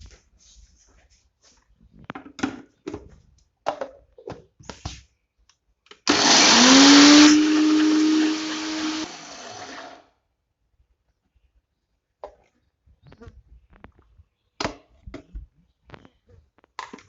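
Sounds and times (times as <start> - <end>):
mixer grinder motor whine: 6.1 - 10.0.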